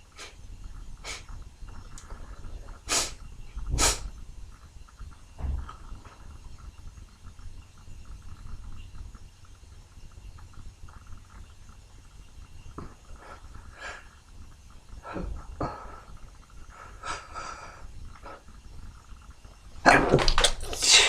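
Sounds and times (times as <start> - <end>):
steady low rumble: 0.0 - 21.0
man sniffing: 1.0 - 1.2, 2.9 - 3.2, 3.8 - 4.0
man sneezing: 20.7 - 21.0.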